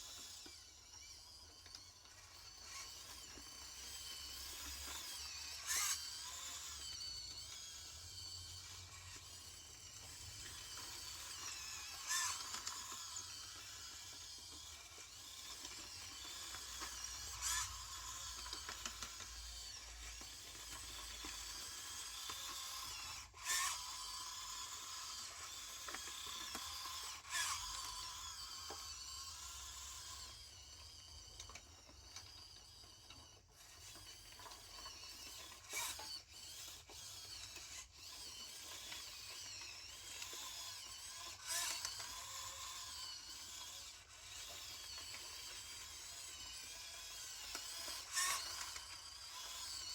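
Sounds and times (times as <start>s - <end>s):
small electric motors whining: 0.0s - 49.9s.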